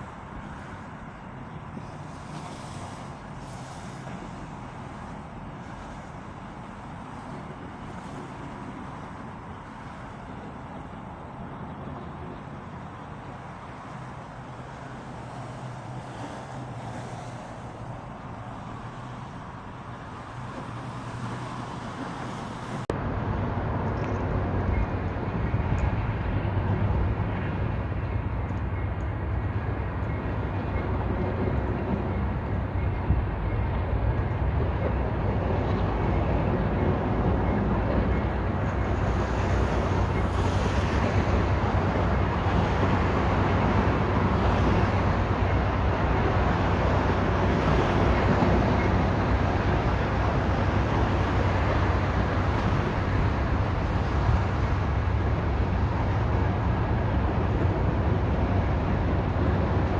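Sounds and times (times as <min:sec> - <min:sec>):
train wheels rumbling on rail: 0:20.1 - 0:59.9
wind on microphone: 0:22.6 - 0:59.9.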